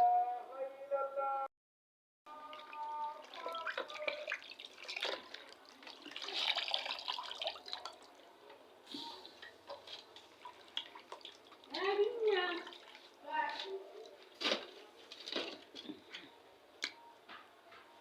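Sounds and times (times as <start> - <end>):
water splashing and dripping: 2.4 - 8.2, 9.2 - 15.9.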